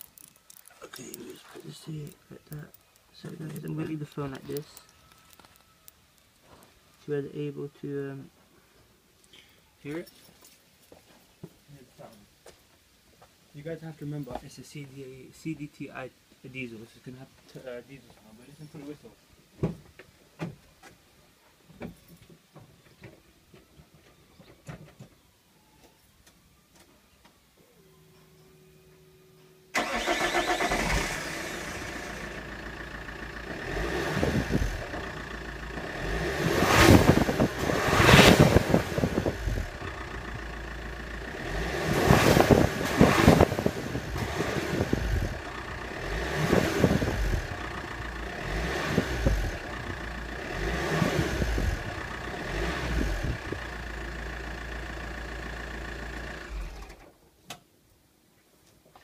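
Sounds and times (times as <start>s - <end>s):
diesel car engine revving: 29.8s - 57.0s.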